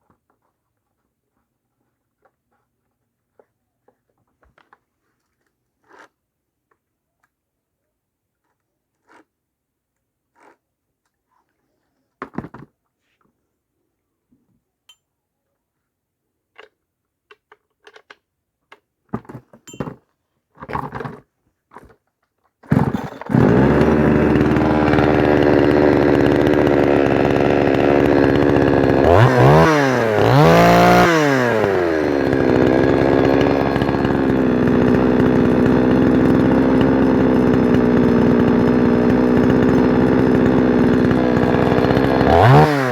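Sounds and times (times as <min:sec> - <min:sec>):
chainsaw engine revving: 0:22.7 - 0:42.9.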